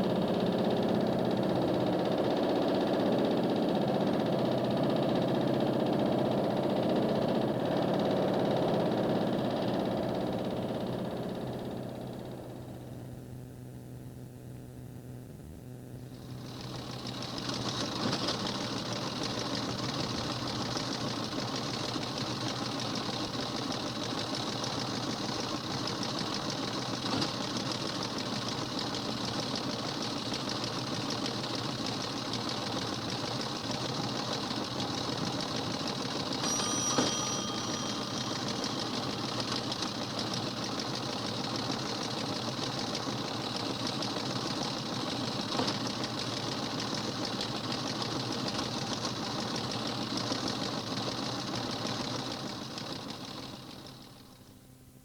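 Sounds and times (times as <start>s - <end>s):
machine rapid mechanical clatter: 16.3s - 36.4s
short bright ring: 36.4s - 39.9s.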